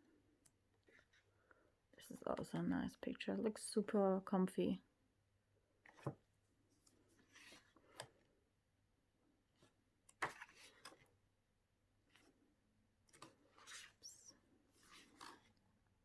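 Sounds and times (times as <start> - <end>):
book pages turning: 5.8 - 6.2, 6.8 - 8.2, 9.6 - 11.1, 13.1 - 15.6
paper rustles and light taps: 5.9 - 6.2.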